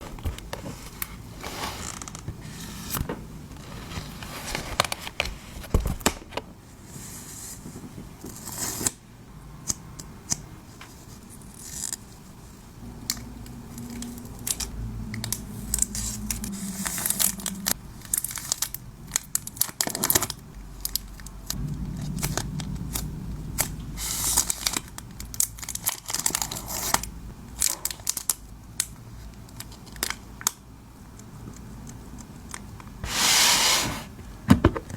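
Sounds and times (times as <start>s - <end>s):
packaging crinkling and tearing: 15.2s - 21.6s, 23.6s - 30.6s.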